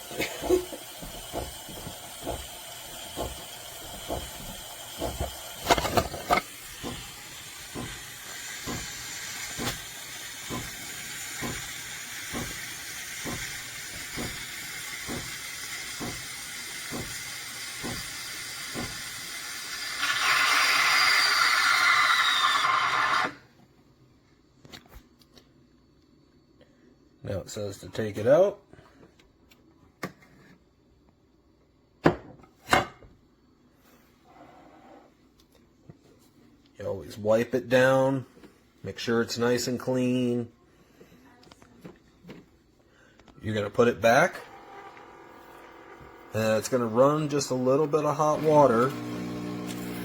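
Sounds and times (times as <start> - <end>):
steam wand hissing: 0.0 - 23.4.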